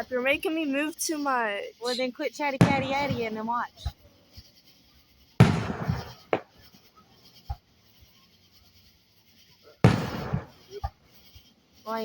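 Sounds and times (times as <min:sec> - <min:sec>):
fireworks pops: 0:00.0 - 0:12.0
fireworks boom: 0:01.8 - 0:04.5, 0:05.4 - 0:07.6, 0:09.8 - 0:11.2.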